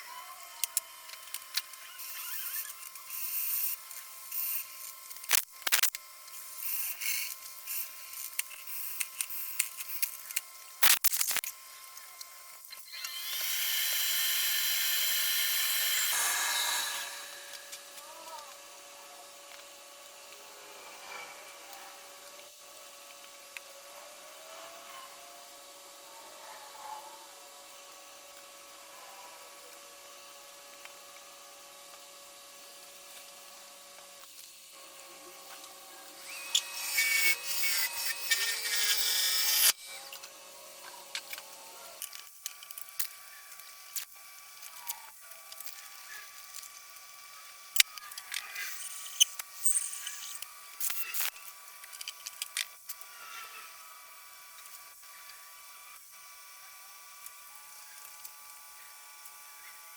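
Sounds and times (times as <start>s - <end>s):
wood lathe whining: 12.9s - 18.0s.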